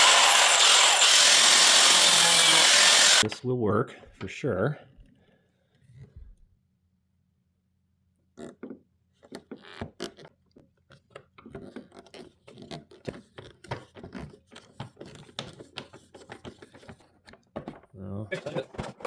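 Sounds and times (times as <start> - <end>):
screwdriver clicking and scraping: 0.0 - 3.4.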